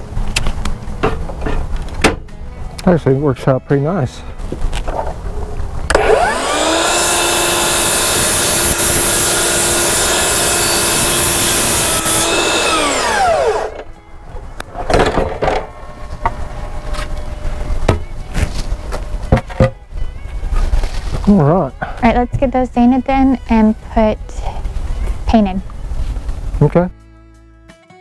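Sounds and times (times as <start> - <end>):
power saw cutting wood: 5.9 - 13.9.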